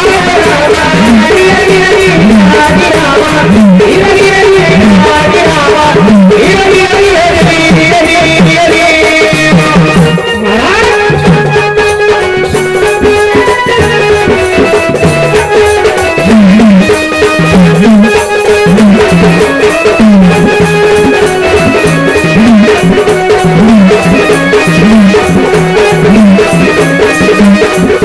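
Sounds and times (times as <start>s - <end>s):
hand drums playing rhythm: 0.0s - 28.0s
sustained melody tones: 9.3s - 28.0s.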